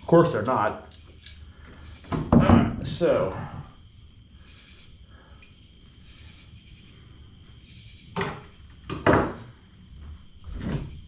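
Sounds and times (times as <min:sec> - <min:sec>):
crickets trilling: 0:00.0 - 0:11.0.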